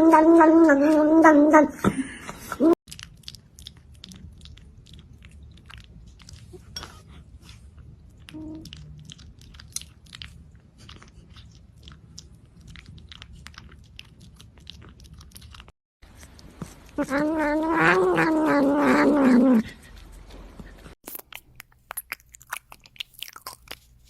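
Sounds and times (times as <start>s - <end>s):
cat wavering drawn-out vocal: 17.0s - 19.7s.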